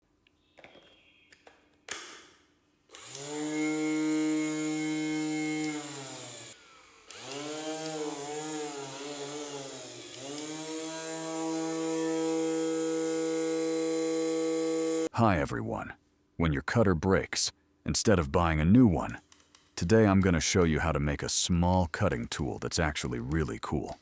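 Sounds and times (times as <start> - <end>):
angle grinder motor whining: 2.9 - 15.1.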